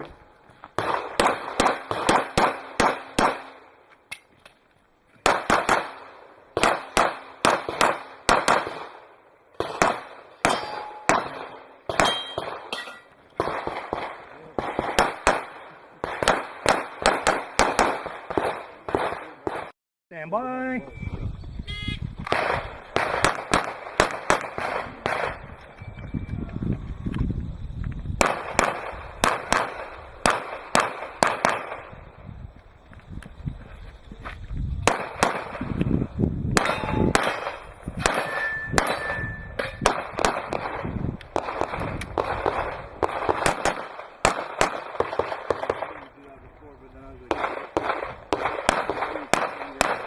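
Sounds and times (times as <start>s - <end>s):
rapid pistol shots: 0.8s - 3.7s, 5.3s - 9.0s, 9.6s - 12.8s, 13.4s - 19.8s, 22.3s - 25.5s, 28.2s - 32.0s, 34.8s - 35.8s, 36.6s - 46.0s, 47.3s - 50.0s
steel targets clanging: 10.5s - 11.2s, 11.9s - 13.2s, 36.6s - 37.2s, 38.0s - 39.8s.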